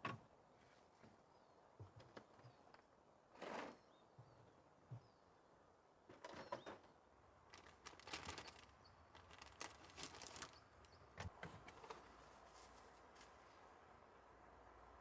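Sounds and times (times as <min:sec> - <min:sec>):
faint rustling: 0:07.5 - 0:13.7.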